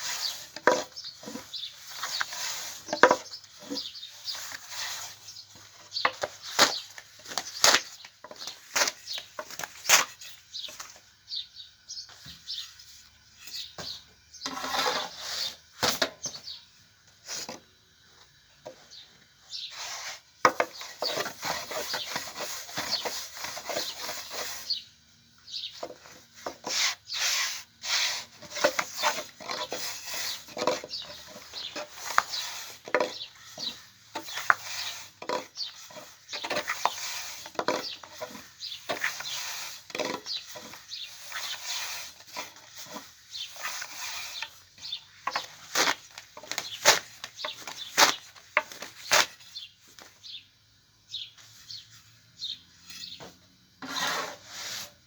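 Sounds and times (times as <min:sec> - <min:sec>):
scraping and rubbing: 0:00.0 - 0:10.8, 0:14.4 - 0:16.0, 0:19.7 - 0:24.8, 0:25.8 - 0:49.4, 0:53.8 - 0:55.0.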